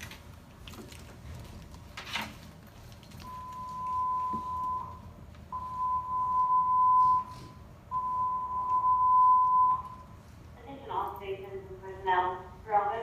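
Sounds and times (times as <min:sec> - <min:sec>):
long electronic alert tones: 0:03.3 - 0:10.0.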